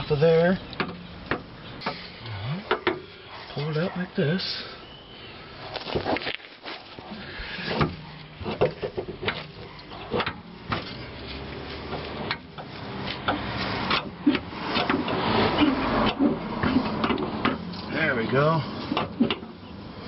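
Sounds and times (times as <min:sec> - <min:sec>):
metal knocks clicks and scrapes: 0:07.7 - 0:17.9, 0:18.9 - 0:19.6.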